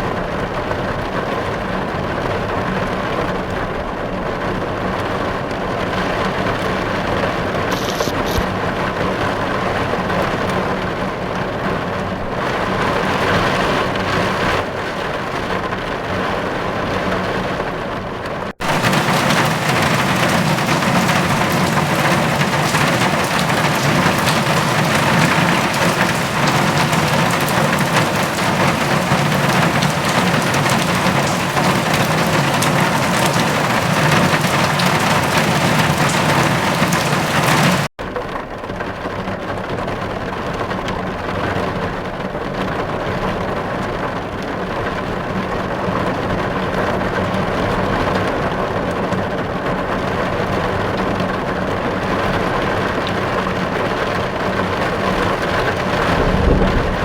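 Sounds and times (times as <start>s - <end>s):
heavy rain: 0.0s - 57.0s
low rumble of thunder: 18.6s - 37.9s, 55.3s - 57.0s.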